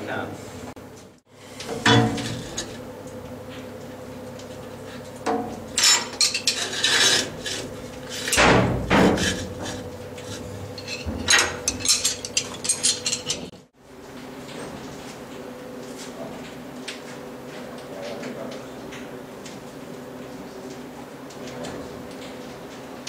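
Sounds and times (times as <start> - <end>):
steady low hum: 0.0 - 23.0
metal clanking and knocking: 1.6 - 2.8, 5.3 - 13.6.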